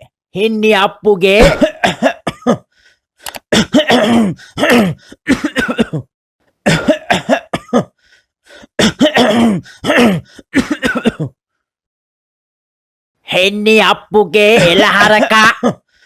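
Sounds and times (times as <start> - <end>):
man coughing and clearing throat: 1.4 - 2.7, 3.4 - 8.0, 8.6 - 11.4, 14.5 - 15.9.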